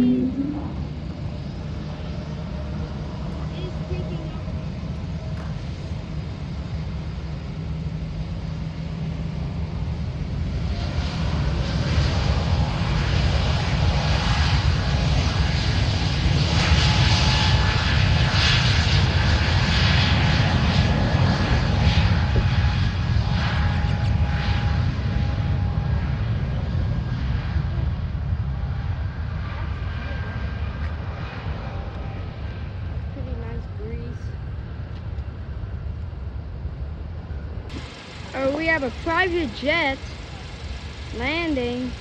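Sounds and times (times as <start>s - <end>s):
jet aircraft engines passing: 0.0s - 42.0s.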